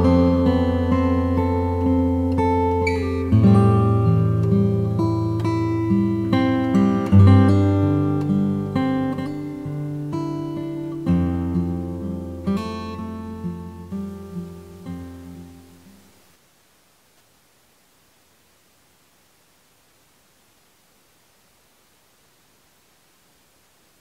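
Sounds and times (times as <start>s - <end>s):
acoustic guitar music: 0.0s - 16.2s.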